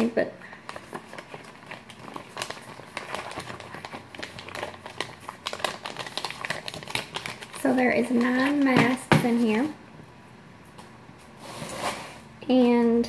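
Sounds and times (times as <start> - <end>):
plastic packets crinkling: 0.5 - 9.6.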